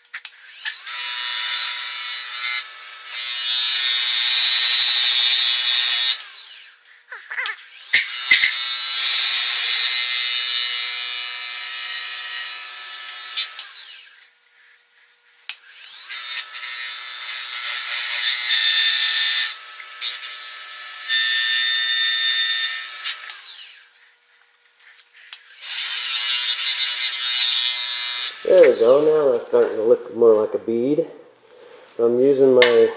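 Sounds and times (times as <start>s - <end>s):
lathe gouge cutting wood: 0.6s - 6.7s, 7.7s - 14.0s, 15.8s - 23.7s, 25.6s - 29.5s.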